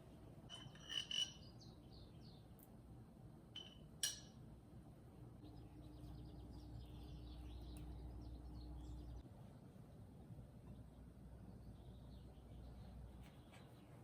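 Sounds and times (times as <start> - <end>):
light clinks: 0.5 - 1.7.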